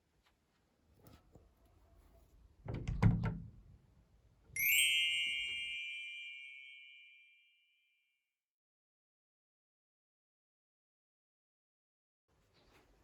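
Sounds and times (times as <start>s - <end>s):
bright bell-like chime: 4.6s - 8.1s.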